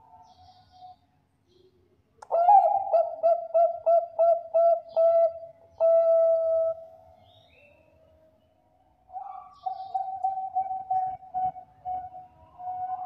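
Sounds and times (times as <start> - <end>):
dove cooing: 2.3 - 6.9, 9.1 - 13.0.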